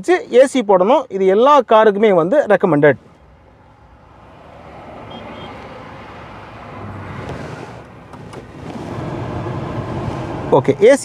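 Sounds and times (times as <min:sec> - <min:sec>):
car engine idling: 0:02.9 - 0:11.0.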